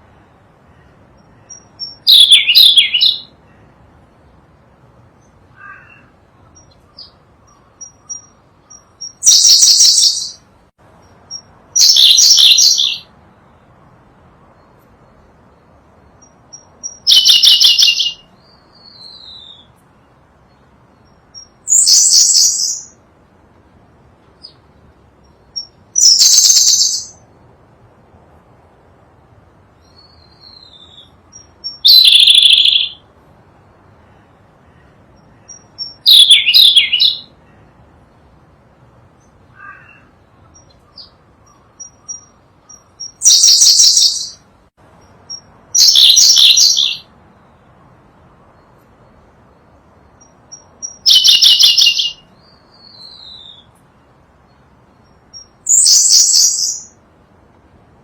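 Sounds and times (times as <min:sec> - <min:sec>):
bird singing high-pitched phrases: 0:01.2 - 0:03.5, 0:05.5 - 0:10.5, 0:11.3 - 0:13.1, 0:16.2 - 0:19.8, 0:21.0 - 0:23.0, 0:25.3 - 0:27.2, 0:29.8 - 0:33.1, 0:35.2 - 0:37.4, 0:45.3 - 0:47.1, 0:50.2 - 0:53.7, 0:55.0 - 0:57.0.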